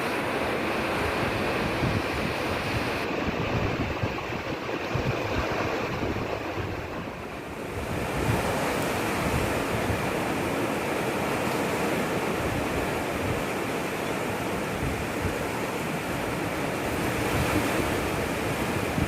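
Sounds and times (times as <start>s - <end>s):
waves breaking on beach: 0.0s - 19.0s
wind buffeting microphone: 0.3s - 10.4s, 14.7s - 19.0s.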